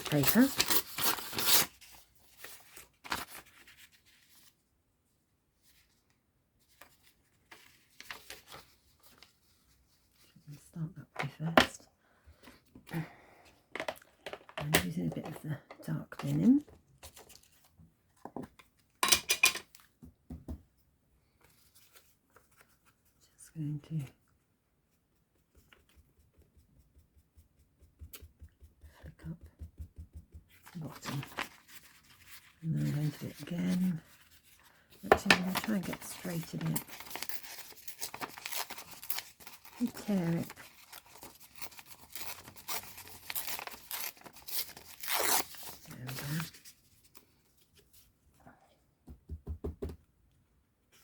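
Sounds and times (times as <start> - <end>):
paper rustling and scraping: 0.0 - 4.6, 5.6 - 10.4, 17.0 - 17.7, 30.6 - 48.1.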